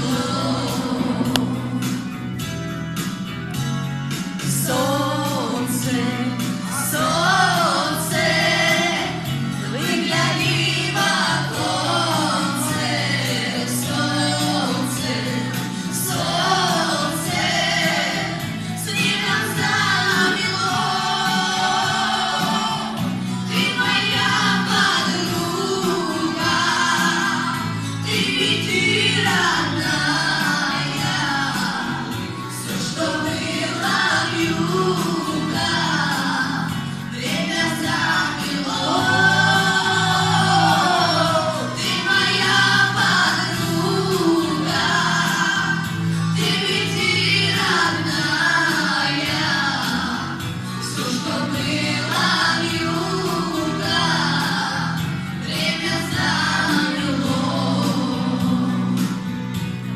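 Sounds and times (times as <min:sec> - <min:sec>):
instrumental accompaniment: 0:00.0 - 0:05.1
boy singing with vibrato: 0:04.7 - 0:58.9.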